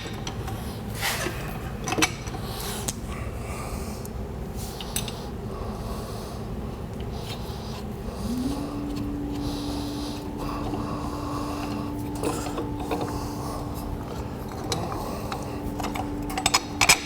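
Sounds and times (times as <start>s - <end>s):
steady low hum: 0.0s - 17.0s
low steady tone: 8.0s - 17.0s
metal tools scraping: 8.3s - 17.0s.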